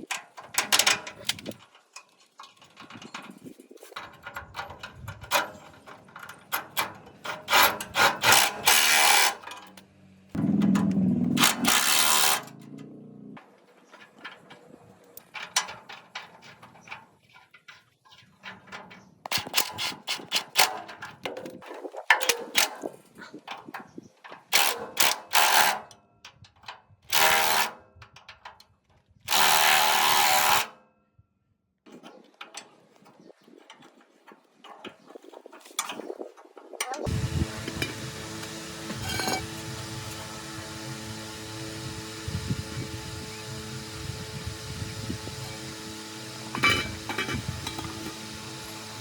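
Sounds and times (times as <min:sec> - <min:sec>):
metal parts clicking and knocking: 0:00.0 - 0:13.0, 0:13.7 - 0:28.6, 0:46.5 - 0:48.3
power tool running: 0:06.6 - 0:09.5, 0:10.4 - 0:13.4, 0:24.6 - 0:25.8, 0:27.1 - 0:27.7, 0:29.3 - 0:30.7, 0:37.0 - 0:49.0.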